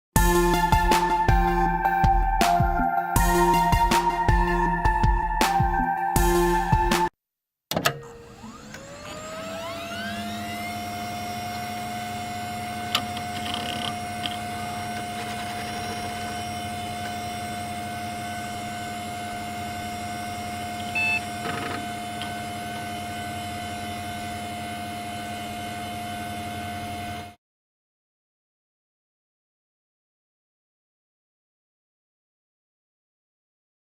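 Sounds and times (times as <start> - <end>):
computer fans whining: 0.2 - 7.1, 8.1 - 27.3.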